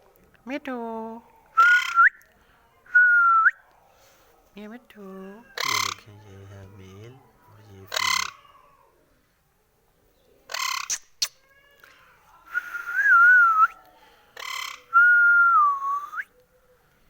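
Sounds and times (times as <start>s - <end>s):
parrot squawking: 1.6s - 2.1s, 5.4s - 6.1s, 7.7s - 8.5s, 10.5s - 11.4s, 14.4s - 15.0s
parrot wavering whistle: 1.6s - 2.1s.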